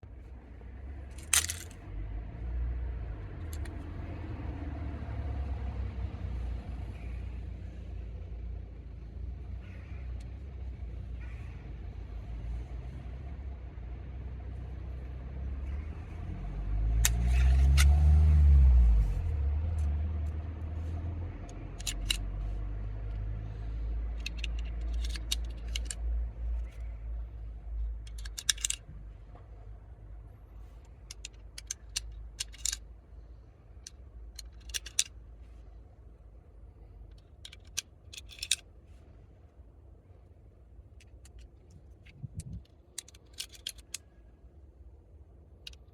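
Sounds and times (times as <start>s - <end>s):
vehicle passing: 0.4s - 7.5s, 12.2s - 29.0s
steady low rumble: 18.7s - 45.9s.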